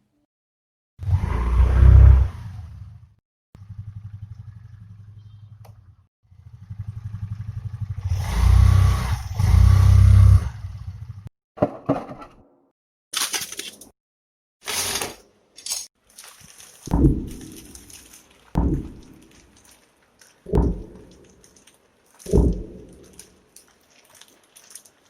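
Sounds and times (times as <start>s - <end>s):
deep rumble: 16.9s - 18.0s, 18.6s - 19.4s, 20.5s - 21.4s, 22.3s - 23.3s
pulsing rumble: 20.5s - 21.3s, 22.3s - 23.2s.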